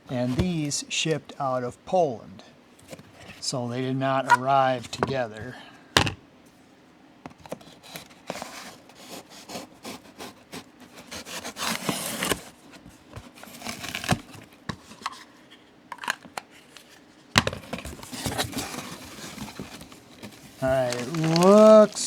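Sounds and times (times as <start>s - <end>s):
packaging rustling: 7.5s - 15.3s, 15.9s - 22.0s.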